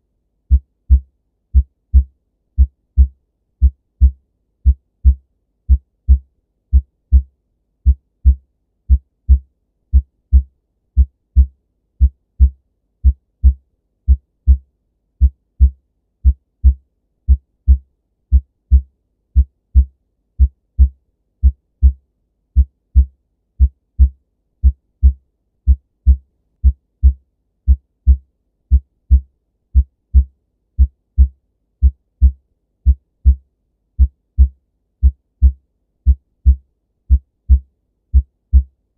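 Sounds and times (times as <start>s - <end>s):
heartbeat lub-dub thumps: 0.5s - 14.6s, 15.2s - 22.0s, 22.6s - 33.4s, 34.0s - 38.7s.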